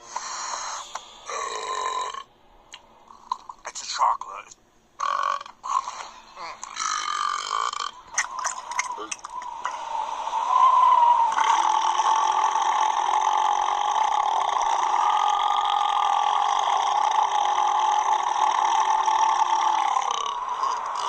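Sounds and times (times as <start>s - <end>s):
long belch: 5.0s - 9.2s, 12.0s - 21.0s.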